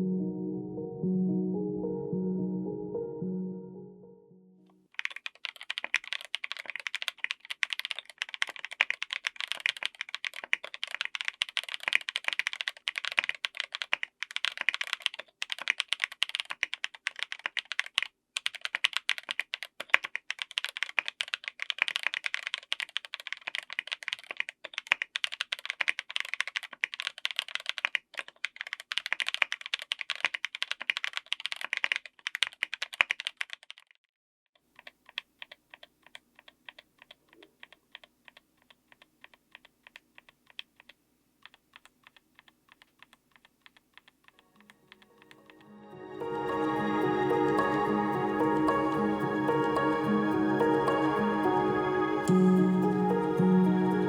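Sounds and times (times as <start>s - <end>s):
mechanical keyboard typing: 5.0s - 34.0s, 34.7s - 45.7s.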